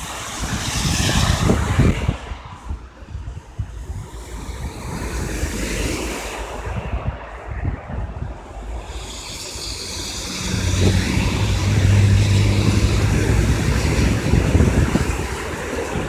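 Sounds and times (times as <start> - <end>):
vehicle passing on wet street: 0.0 - 3.0, 8.5 - 16.0
wind buffeting microphone: 0.0 - 16.0
steady rain: 8.5 - 16.0.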